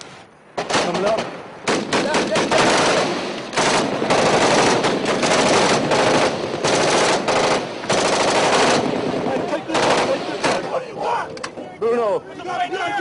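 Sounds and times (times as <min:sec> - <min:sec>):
airsoft guns firing full auto: 0:00.6 - 0:10.8.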